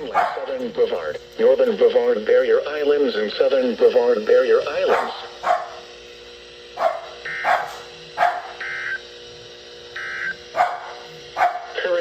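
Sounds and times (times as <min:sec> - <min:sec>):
dog barking: 0:00.0 - 0:00.6, 0:04.9 - 0:05.8, 0:06.8 - 0:08.6, 0:10.5 - 0:11.8
steady low hum: 0:00.0 - 0:12.0.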